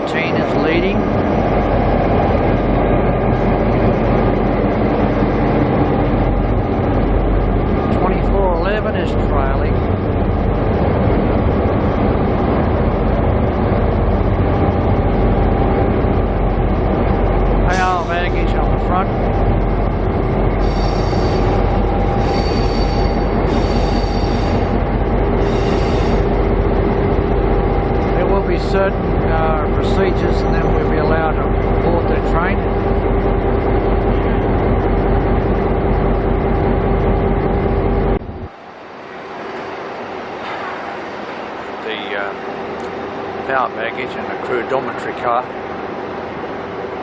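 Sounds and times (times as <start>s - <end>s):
locomotive and train rumbling: 0.0s - 47.0s
high-pitched wheel squeal: 20.6s - 24.8s, 25.4s - 26.4s.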